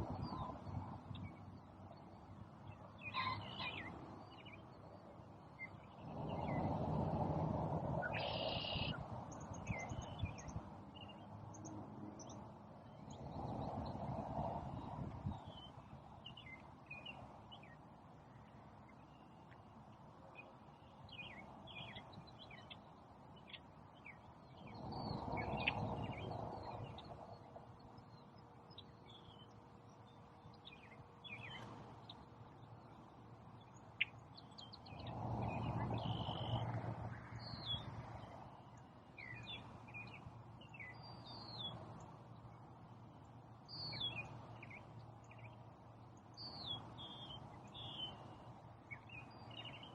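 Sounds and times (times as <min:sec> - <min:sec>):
songbirds chirping and calling: 0:00.1 - 0:06.8, 0:08.0 - 0:14.0, 0:14.7 - 0:49.9.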